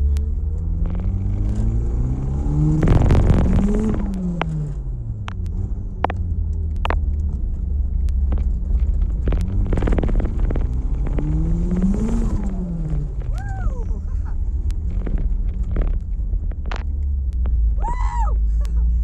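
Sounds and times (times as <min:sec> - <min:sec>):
car engine accelerating: 0:00.0 - 0:19.0
sharp clicks: 0:02.7 - 0:13.6, 0:14.6 - 0:17.8.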